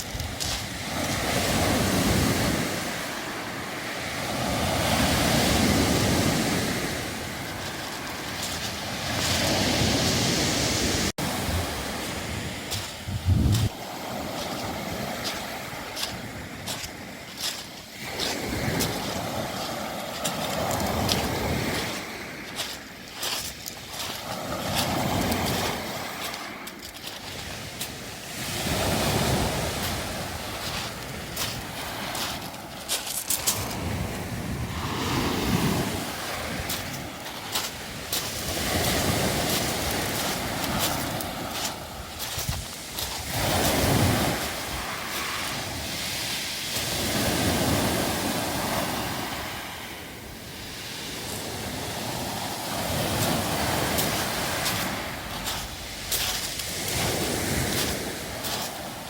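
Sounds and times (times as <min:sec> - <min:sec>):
wind on microphone: 0:00.0 - 0:22.7, 0:27.3 - 0:59.0
surf washing over pebbles: 0:00.0 - 0:59.0.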